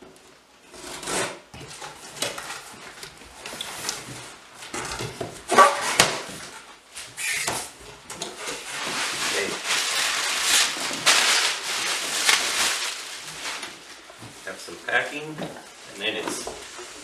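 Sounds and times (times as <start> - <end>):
cardboard scraping and rustling: 0.7 - 17.0
packing tape pulled off: 8.3 - 14.1.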